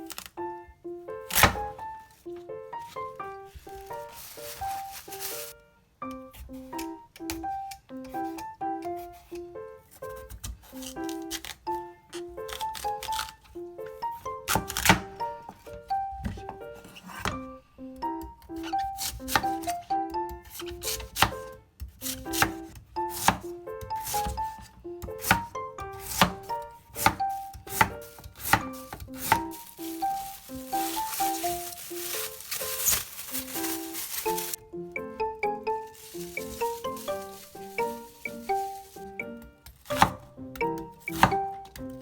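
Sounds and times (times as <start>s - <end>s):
light piano melody: 0.0s - 42.0s
light plucked background music: 0.0s - 42.0s
knife cutting on cutting board: 20.5s - 33.0s.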